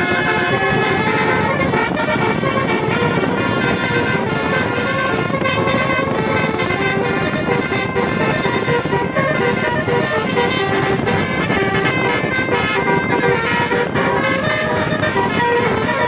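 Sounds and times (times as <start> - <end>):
bus engine: 0.0 - 16.0
musical air horn playing a tune: 0.0 - 16.0
traffic noise: 0.0 - 16.0.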